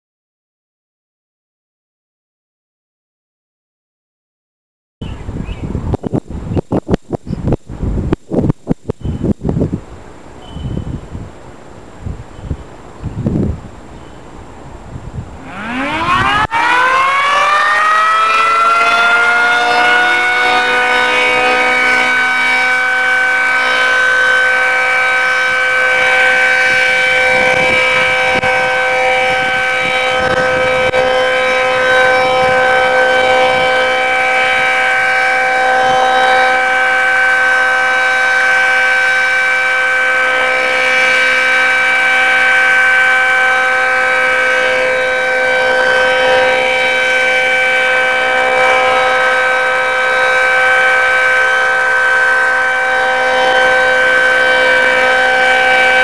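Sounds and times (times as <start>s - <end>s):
two-tone warning siren wailing: 15.2s - 56.0s.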